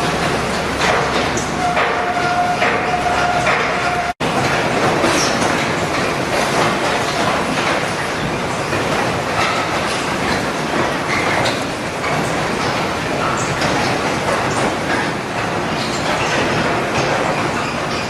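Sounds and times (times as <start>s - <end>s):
industrial machinery clattering: 0.0s - 18.0s.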